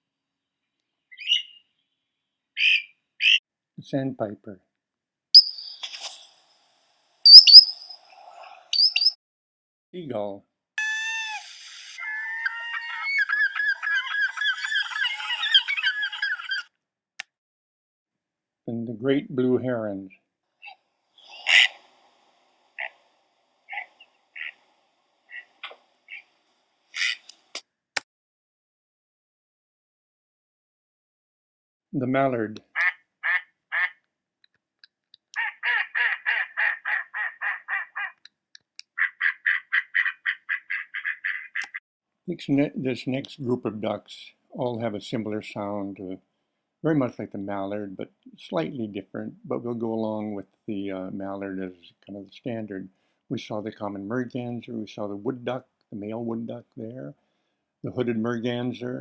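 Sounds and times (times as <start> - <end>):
gulls calling: 7.3 - 8.0, 10.8 - 16.7, 20.6 - 22.1, 22.8 - 27.3
duck quacking: 21.3 - 21.9, 23.7 - 24.6, 25.3 - 26.2, 27.0 - 27.3, 32.8 - 34.0, 35.4 - 38.2, 39.0 - 41.8.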